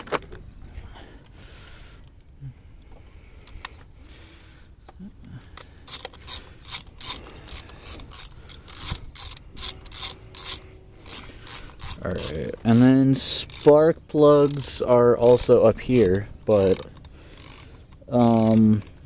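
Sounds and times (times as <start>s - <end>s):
ratchet wrench clicking: 5.9s - 19.0s.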